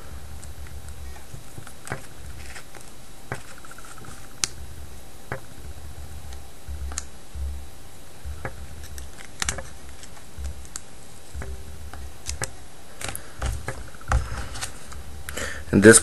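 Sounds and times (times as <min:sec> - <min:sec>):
plastic card clicking and scraping: 0:00.4 - 0:04.6, 0:08.4 - 0:15.4.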